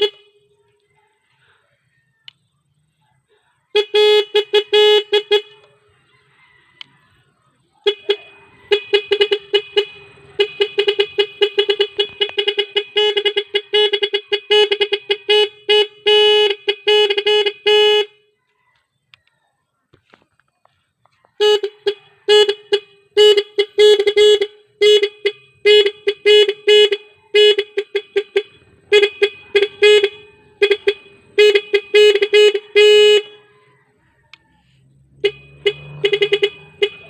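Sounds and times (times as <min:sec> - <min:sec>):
bicycle horn beeping: 0:00.0 - 0:00.4, 0:03.7 - 0:05.7, 0:07.8 - 0:18.3, 0:21.4 - 0:33.5, 0:35.1 - 0:37.0.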